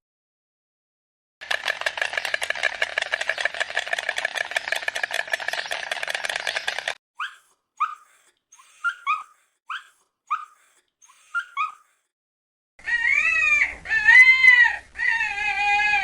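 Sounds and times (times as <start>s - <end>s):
animal rapid pulsing call: 1.4s - 11.8s
animal whimpering yelps: 7.2s - 12.0s.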